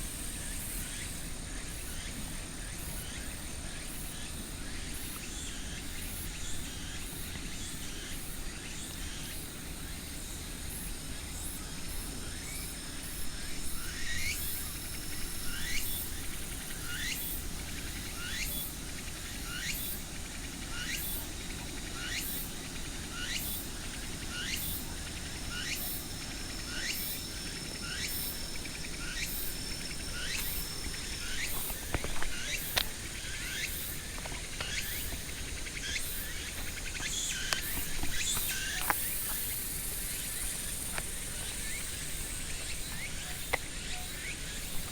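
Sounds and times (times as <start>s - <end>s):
insect sweeping call: 12.4s - 44.9s
insect high-pitched trill: 19.2s - 44.9s.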